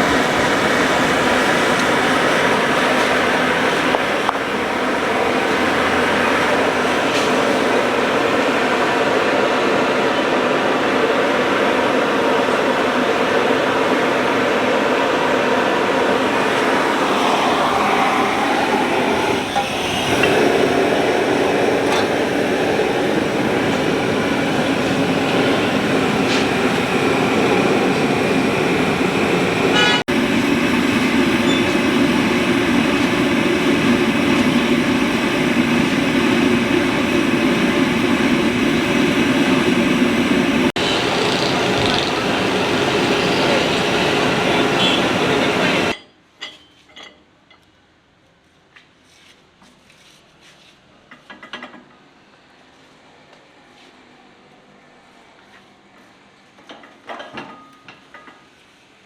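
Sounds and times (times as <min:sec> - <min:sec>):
loud machine drone: 0:00.0 - 0:46.0.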